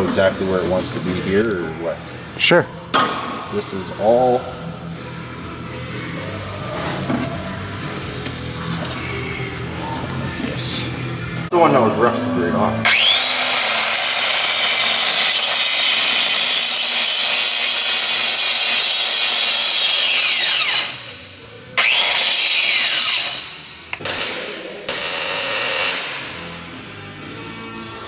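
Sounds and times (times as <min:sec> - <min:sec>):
electric grinder whining: 0:12.0 - 0:24.3.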